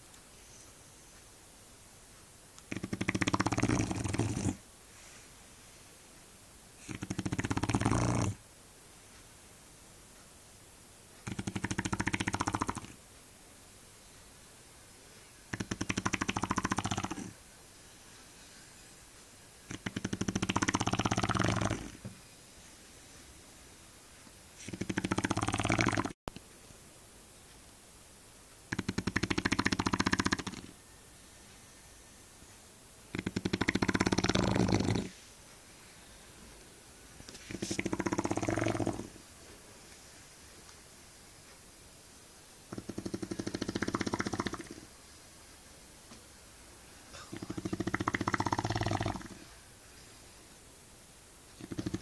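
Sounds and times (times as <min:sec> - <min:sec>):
dog snoring: 0:02.7 - 0:04.6, 0:06.8 - 0:08.4, 0:11.2 - 0:13.0, 0:15.5 - 0:17.4, 0:19.6 - 0:22.1, 0:24.6 - 0:26.2, 0:28.7 - 0:30.8, 0:33.1 - 0:35.2, 0:37.4 - 0:39.2, 0:42.7 - 0:44.9, 0:47.2 - 0:49.5, 0:51.6 - 0:52.0.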